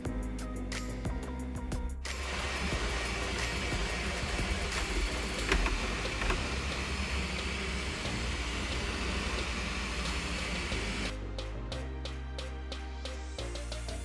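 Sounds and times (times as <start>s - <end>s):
printer fans and motors whirring: 2.1s - 11.1s.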